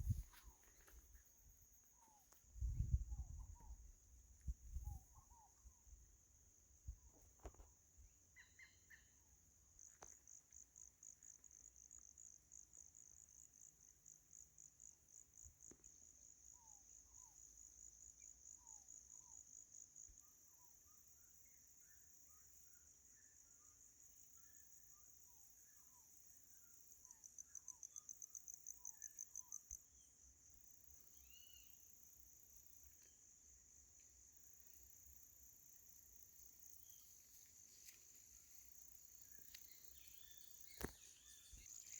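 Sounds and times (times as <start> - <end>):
high insect trill: 0.0 - 2.9, 25.5 - 41.9
faint bird chirps: 0.0 - 6.2, 6.8 - 10.2, 16.4 - 30.3, 30.9 - 32.2, 36.3 - 41.9.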